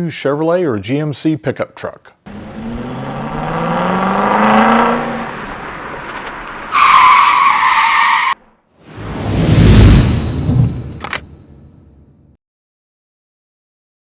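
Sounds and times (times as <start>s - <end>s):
car engine revving: 2.3s - 6.9s
tire squeal: 6.1s - 8.4s.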